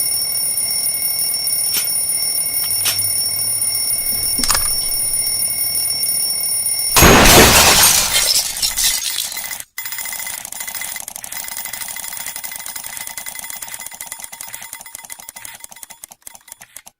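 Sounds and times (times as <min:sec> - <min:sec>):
alarm clock bell ringing: 0:00.0 - 0:06.9.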